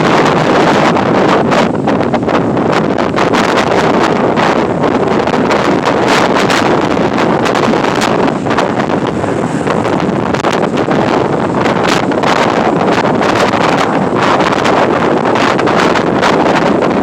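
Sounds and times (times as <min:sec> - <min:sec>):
strong wind buffeting microphone: 0:00.0 - 0:17.0.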